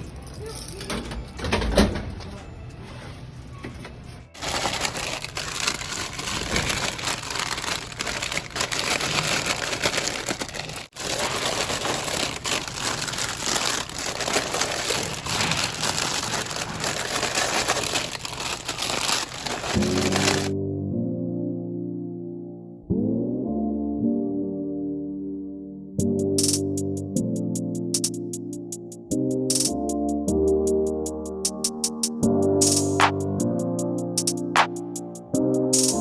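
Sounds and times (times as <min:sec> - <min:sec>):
snack bags crinkling: 0:04.4 - 0:20.5.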